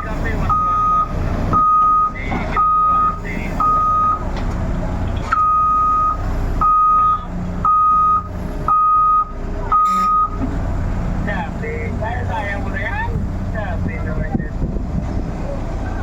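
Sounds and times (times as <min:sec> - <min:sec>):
diesel engine rumbling: 0:00.0 - 0:16.0
backup alarm beeping: 0:00.5 - 0:04.2, 0:05.4 - 0:10.4.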